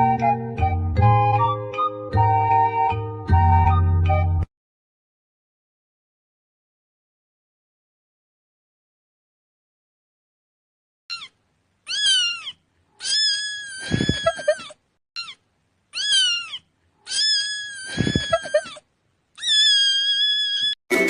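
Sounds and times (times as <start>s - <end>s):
cat meowing: 11.1s - 18.8s, 19.4s - 20.8s.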